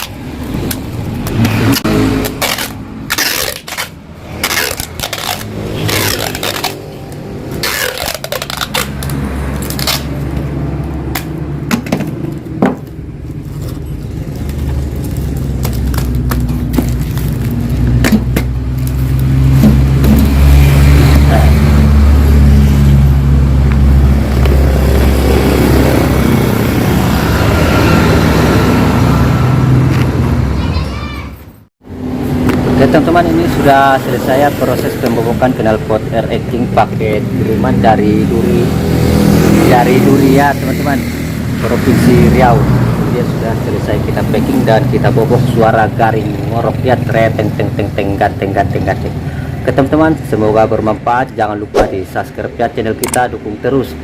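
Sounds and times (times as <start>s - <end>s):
motorcycle engine revving: 0.0s - 12.9s, 13.5s - 30.5s, 31.9s - 49.7s
knocks and scrapes: 19.3s - 21.3s.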